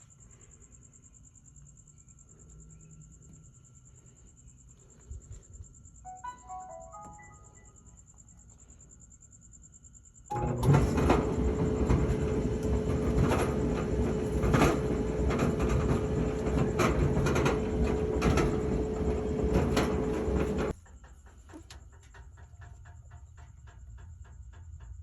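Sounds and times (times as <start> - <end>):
dryer motor hum: 10.3 - 20.8
dryer drum rattling and thumping: 10.3 - 24.6.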